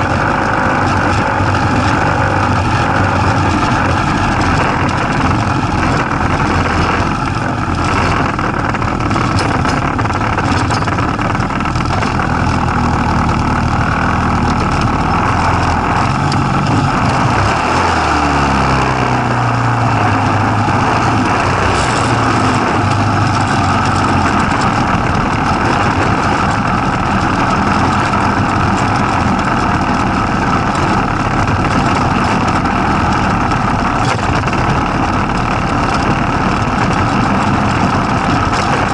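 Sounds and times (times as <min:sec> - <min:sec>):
go-kart engine running: 0:00.0 - 0:38.9.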